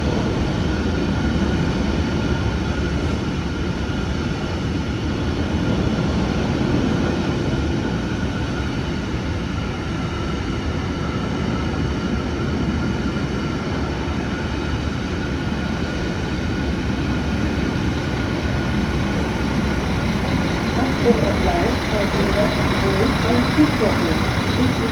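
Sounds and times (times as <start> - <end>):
train rumbling: 14.5 - 24.9
faint steady whine: 15.0 - 24.9.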